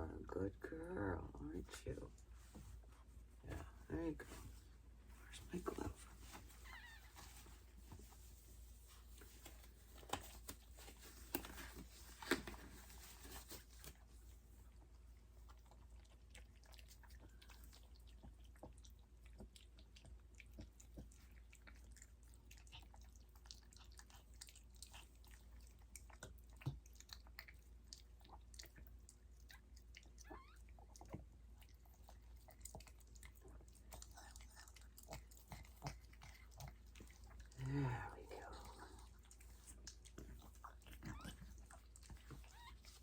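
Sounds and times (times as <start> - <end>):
dog chewing and licking: 5.3 - 43.0.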